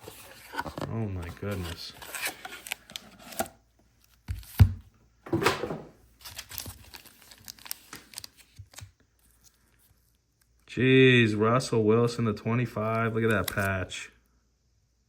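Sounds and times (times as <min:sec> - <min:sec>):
packaging tearing and crinkling: 0:06.2 - 0:08.9.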